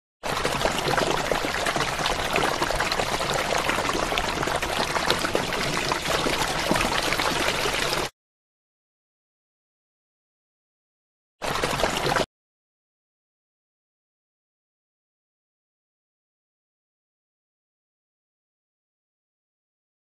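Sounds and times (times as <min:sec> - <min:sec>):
water flowing: 0:00.2 - 0:08.1, 0:11.4 - 0:12.3.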